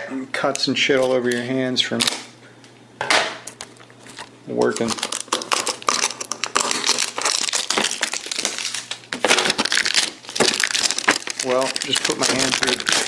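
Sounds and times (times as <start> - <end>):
packaging crinkling and tearing: 3.6 - 13.0.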